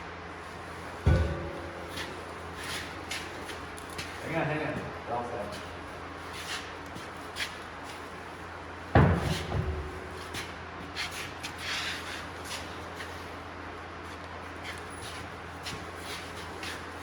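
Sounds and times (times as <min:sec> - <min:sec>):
steady low hum: 0:00.0 - 0:17.0
heavy thud: 0:01.0 - 0:02.3.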